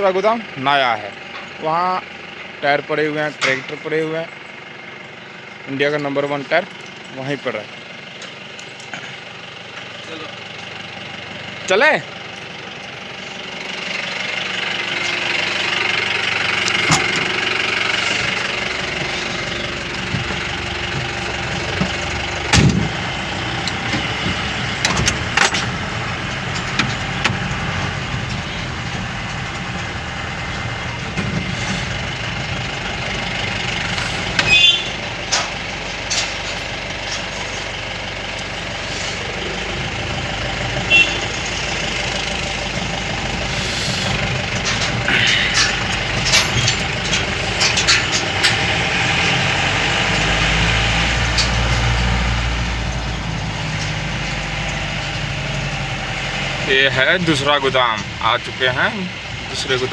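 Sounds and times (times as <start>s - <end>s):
road noise: 0.0s - 59.9s
vehicle engine running: 0.0s - 59.9s
knocks and rattles: 40.0s - 49.6s.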